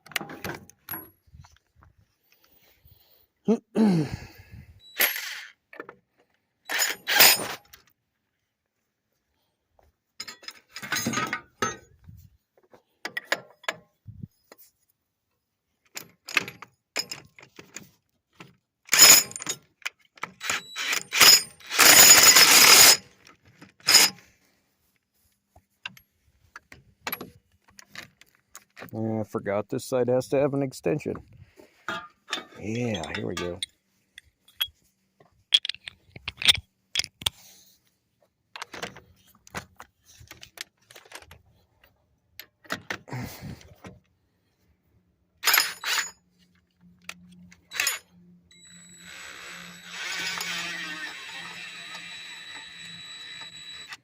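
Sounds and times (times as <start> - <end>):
metal tool clanks and rattles: 6.7 - 7.7, 10.2 - 12.0, 13.1 - 14.0, 18.9 - 23.0, 31.8 - 34.8, 35.5 - 37.3, 45.4 - 46.2.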